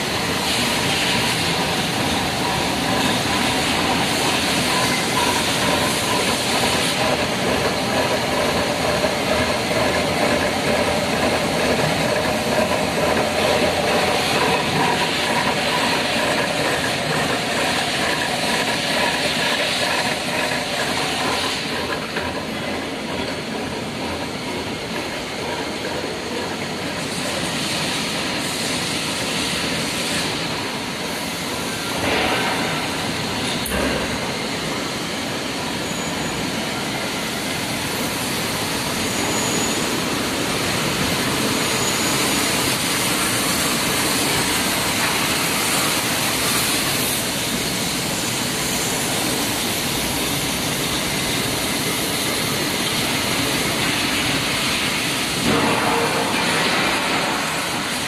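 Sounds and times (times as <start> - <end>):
heavy metalworking machinery running: 0.0 - 58.0.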